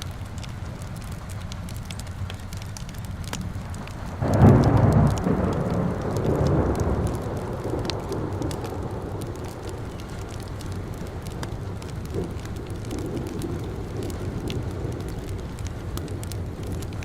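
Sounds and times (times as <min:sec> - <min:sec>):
steady rain: 0:00.0 - 0:17.0
fireplace crackling: 0:00.2 - 0:17.0
thunder rumbling: 0:03.6 - 0:17.0.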